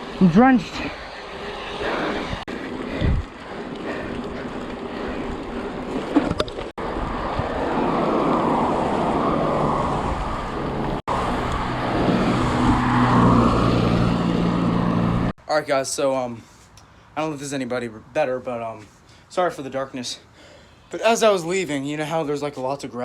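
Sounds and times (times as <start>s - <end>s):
wind on microphone: 0.0s - 15.3s.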